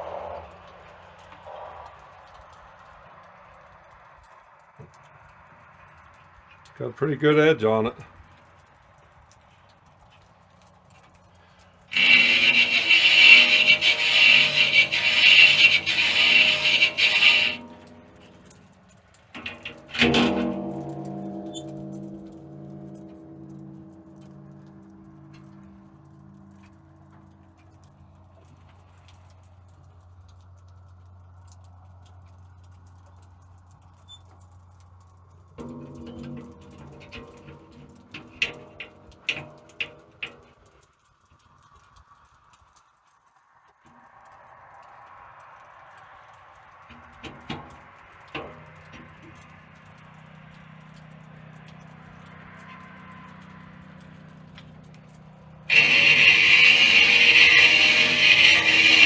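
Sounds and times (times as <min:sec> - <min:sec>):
sharp metal knocks: 0:11.9 - 0:18.6, 0:19.4 - 0:26.3, 0:35.6 - 0:40.6
grinding-wheel motor humming: 0:11.9 - 0:18.8, 0:19.4 - 0:26.6, 0:35.6 - 0:40.4, 0:55.0 - 0:59.0.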